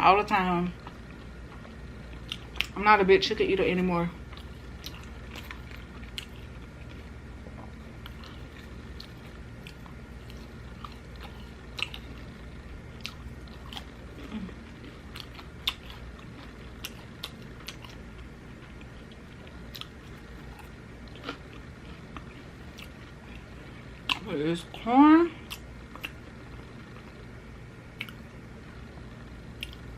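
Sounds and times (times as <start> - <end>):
low hum: 0.0 - 29.9
crunchy chewing of corn: 4.2 - 24.3, 25.4 - 27.2.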